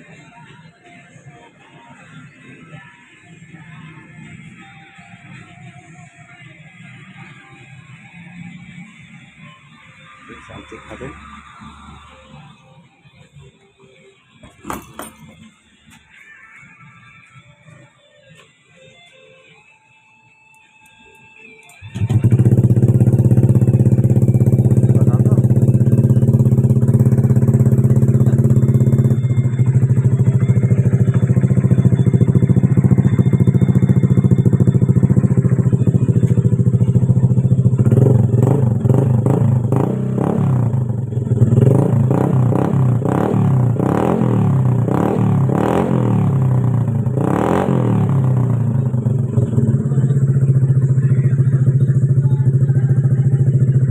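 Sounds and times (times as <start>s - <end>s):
scooter engine idling and revving: 6.4s - 13.2s, 14.4s - 15.5s, 21.8s - 53.9s.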